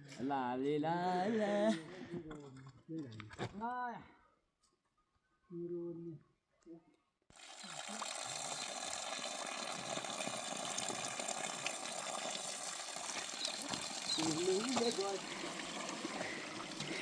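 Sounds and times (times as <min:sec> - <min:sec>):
running water rushing: 0:07.4 - 0:17.0.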